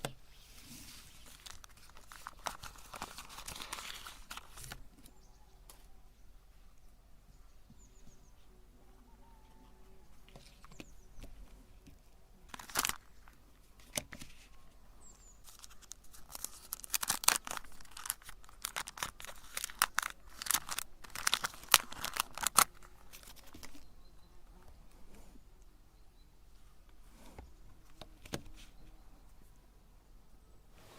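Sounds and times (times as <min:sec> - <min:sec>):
wrapper tearing and crinkling: 0:01.1 - 0:04.8, 0:12.5 - 0:13.2, 0:15.4 - 0:23.8.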